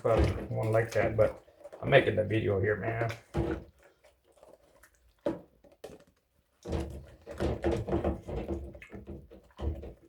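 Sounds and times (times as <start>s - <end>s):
plastic parts knocking on sink: 0.0s - 1.3s, 6.6s - 10.0s.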